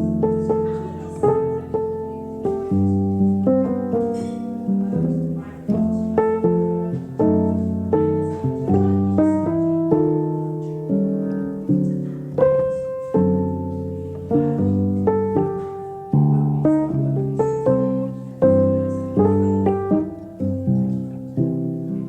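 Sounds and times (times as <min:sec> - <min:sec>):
gentle piano piece: 0:00.0 - 0:22.0.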